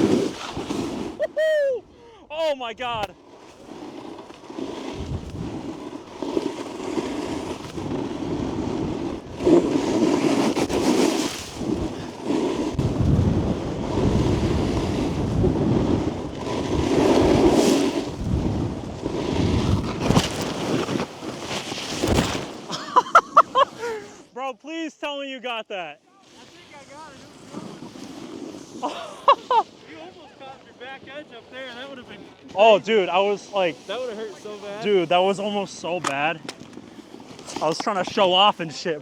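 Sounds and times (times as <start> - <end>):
snowboard scraping over snow: 0.0 - 39.0
wind rushing over microphone: 4.9 - 5.8, 7.2 - 21.0.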